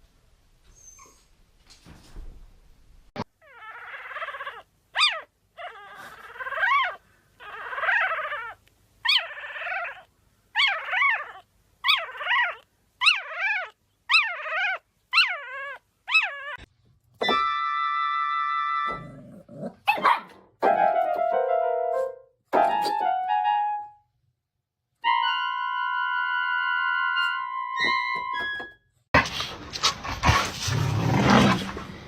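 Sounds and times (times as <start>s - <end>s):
dog howling whines: 10.6s - 19.1s, 25.0s - 27.9s
piano music: 20.6s - 24.0s.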